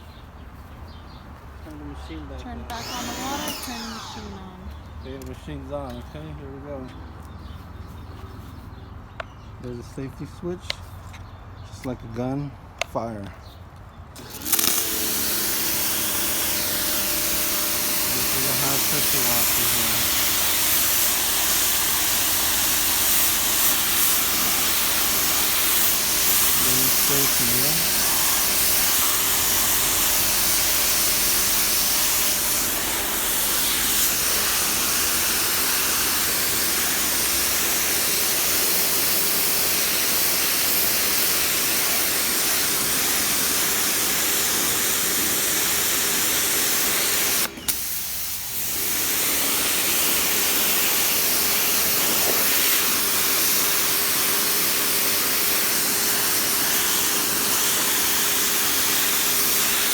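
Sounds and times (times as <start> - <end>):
pressure washer water jet hiss: 2.7 - 4.6, 14.2 - 59.9
pump motor hum: 2.7 - 4.6, 14.2 - 59.9
pressure washer click: 14.2 - 16.4, 46.8 - 53.8.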